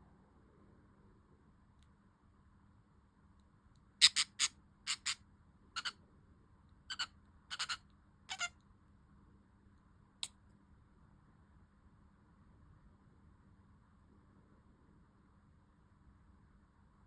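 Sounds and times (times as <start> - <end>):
budgerigar chirping: 4.0 - 5.2, 5.8 - 6.0, 6.9 - 8.5.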